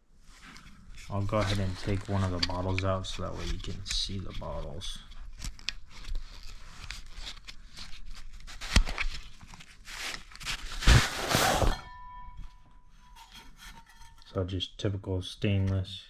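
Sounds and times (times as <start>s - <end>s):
fabric rustling: 5.8s - 12.2s
faint steady ringing tone: 11.7s - 14.2s.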